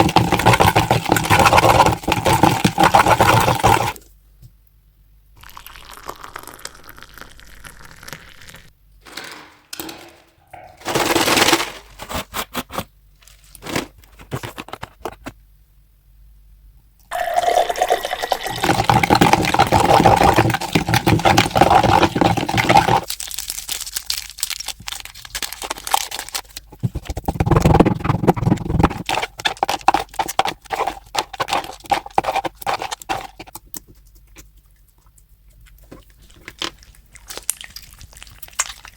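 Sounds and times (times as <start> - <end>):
slime squelching and popping: 35.8 - 38.9.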